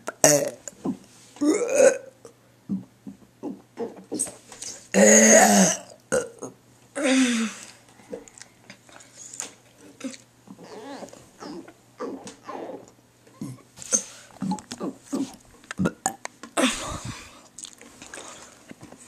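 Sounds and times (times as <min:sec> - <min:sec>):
person burping: 0:00.0 - 0:00.7, 0:01.4 - 0:02.3, 0:04.9 - 0:07.6, 0:15.7 - 0:17.7.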